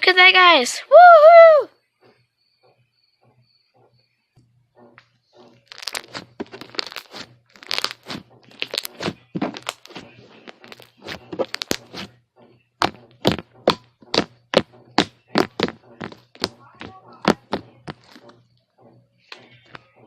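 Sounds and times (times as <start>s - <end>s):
slime crackling and popping: 5.7s - 12.1s, 14.1s - 16.5s.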